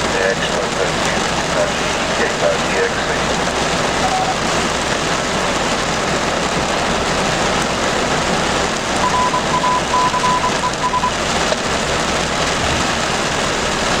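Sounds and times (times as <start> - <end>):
heavy rain hissing: 0.0 - 14.0
high morse code beeps: 4.0 - 4.4, 9.0 - 11.2
short beep: 9.0 - 11.2.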